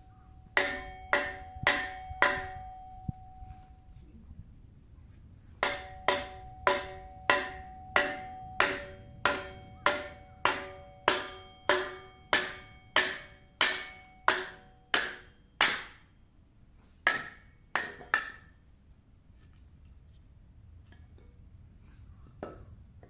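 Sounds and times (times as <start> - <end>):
tool striking firewood: 0.6 - 2.8, 5.6 - 16.0, 17.1 - 18.5.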